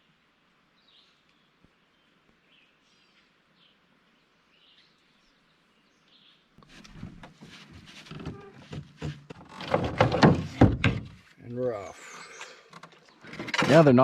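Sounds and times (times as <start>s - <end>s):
knocks and rustling clatter: 6.6s - 11.4s, 12.7s - 14.0s
faint bird chirps: 11.7s - 13.3s.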